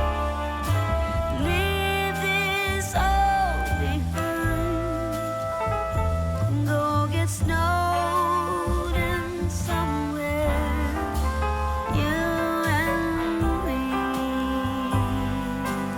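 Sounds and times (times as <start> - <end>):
background music: 0.0 - 15.9
person singing: 1.3 - 5.6, 6.4 - 15.9.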